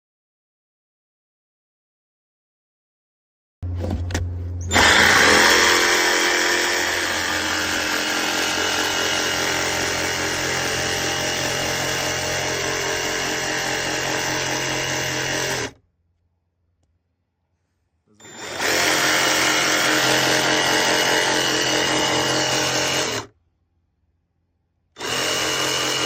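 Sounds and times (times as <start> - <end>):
cordless jig saw running: 4.7 - 15.8, 18.2 - 23.3, 25.0 - 26.0.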